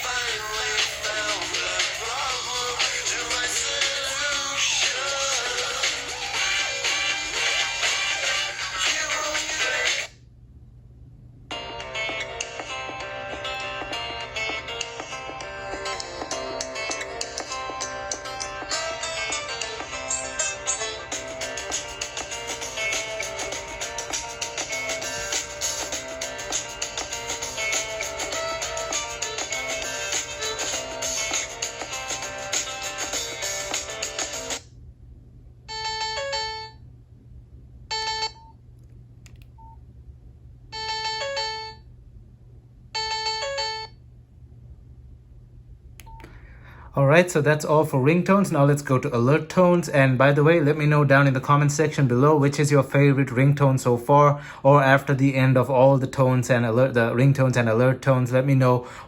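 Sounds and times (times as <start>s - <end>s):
phone ringtone melody: 11.5s - 34.6s, 35.7s - 36.8s, 37.9s - 38.5s, 40.7s - 41.8s, 43.0s - 44.0s.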